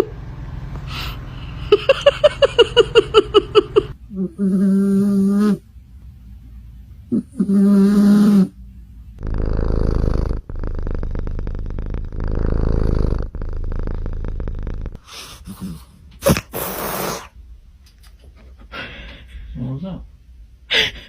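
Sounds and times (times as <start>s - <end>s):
cat snoring: 4.2s - 5.6s, 7.1s - 8.6s, 9.2s - 15.8s.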